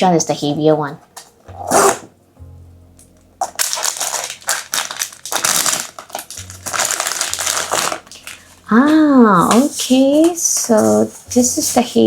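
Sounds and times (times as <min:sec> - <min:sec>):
packaging crinkling and rustling: 0:03.4 - 0:11.8.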